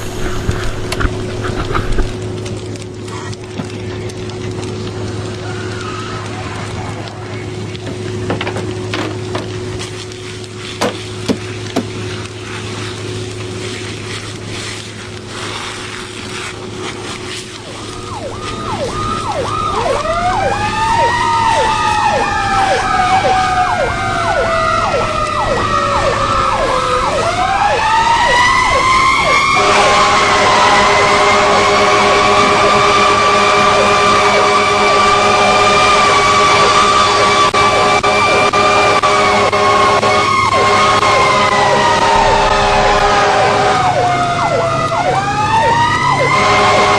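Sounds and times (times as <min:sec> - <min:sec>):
steady hum: 0:00.0 - 0:46.9
wailing siren: 0:00.0 - 0:46.9
fast yelping siren: 0:17.3 - 0:46.9.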